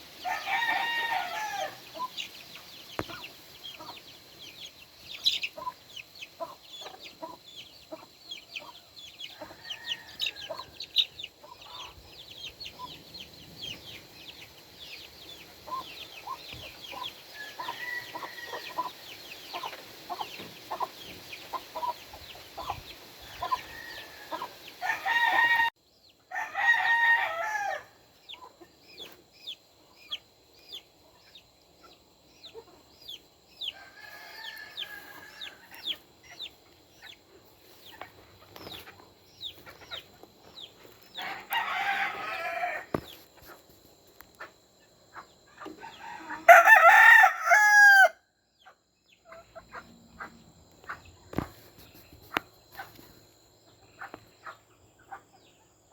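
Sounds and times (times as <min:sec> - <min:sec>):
roosters crowing: 0:00.0 - 0:02.3, 0:09.2 - 0:12.0, 0:16.9 - 0:20.2, 0:23.2 - 0:28.1, 0:33.6 - 0:35.8, 0:41.1 - 0:43.1, 0:45.6 - 0:48.3
chickens clucking: 0:00.0 - 0:25.5, 0:28.1 - 0:41.6, 0:42.2 - 0:46.5, 0:48.6 - 0:55.9.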